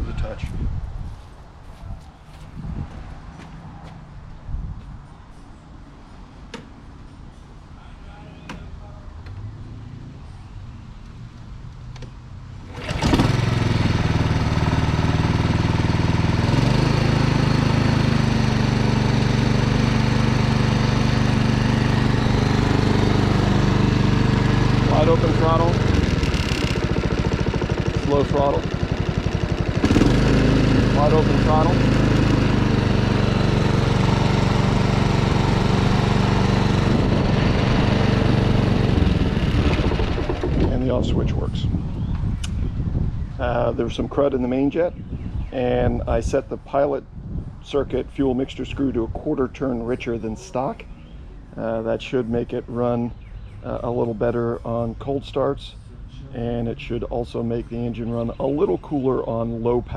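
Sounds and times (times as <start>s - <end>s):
lawn mower engine starting: 12.6s - 41.2s.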